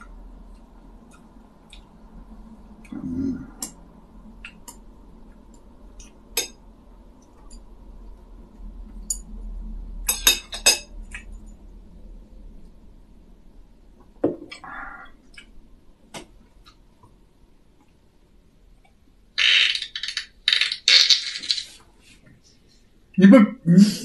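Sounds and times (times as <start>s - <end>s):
tableware clinking: 10.1s - 10.9s.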